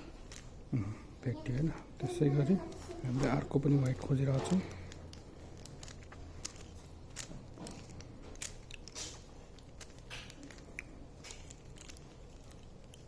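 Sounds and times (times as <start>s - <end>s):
puzzle cube clicking and rattling: 3.5s - 13.0s.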